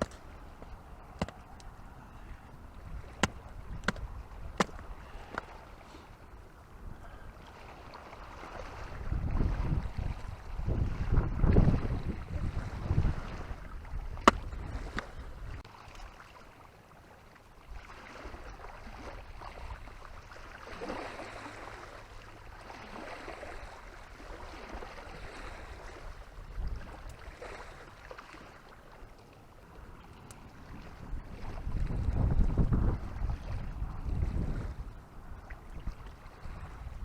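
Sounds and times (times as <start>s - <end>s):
wind buffeting microphone: 0.0s - 5.7s, 8.3s - 15.7s, 24.3s - 27.5s, 29.8s - 37.0s
water lapping: 0.0s - 37.0s.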